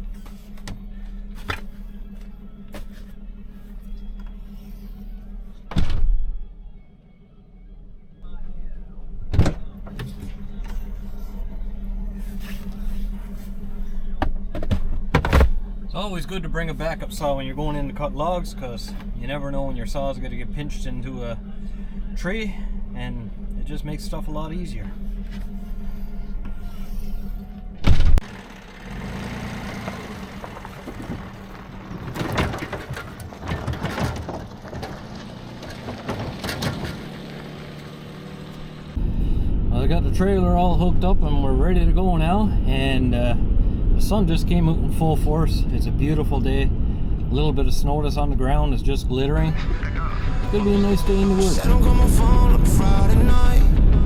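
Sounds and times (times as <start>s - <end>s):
engine idling: 0.0s - 54.0s
metal clanks and rattles: 31.0s - 37.4s.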